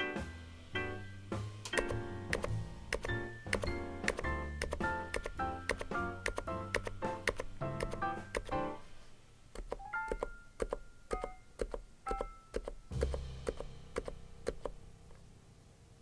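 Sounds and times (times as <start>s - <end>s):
piano background music: 0.0s - 9.1s, 9.8s - 16.0s
keyboard keystrokes clicking: 1.7s - 8.6s, 9.5s - 14.8s.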